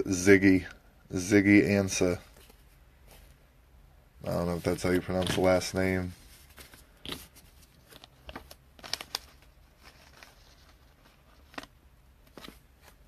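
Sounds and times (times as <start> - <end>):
trading cards rustling: 4.3 - 13.0.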